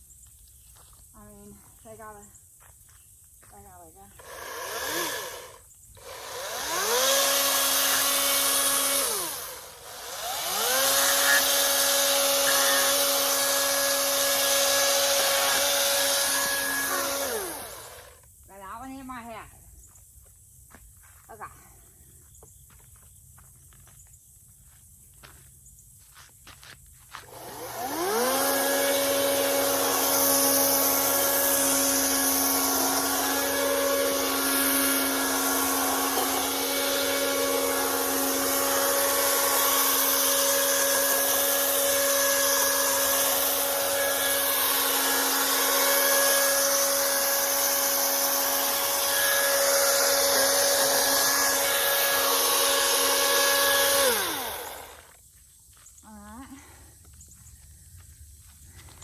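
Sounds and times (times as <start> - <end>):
chainsaw motor whine: 4.1 - 19.0, 27.1 - 55.2.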